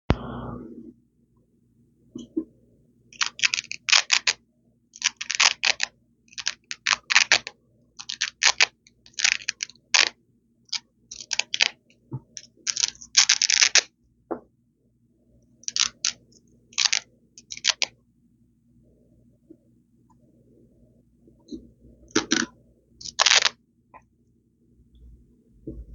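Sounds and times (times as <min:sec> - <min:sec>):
velcro strips ripping: 0:22.2 - 0:23.5.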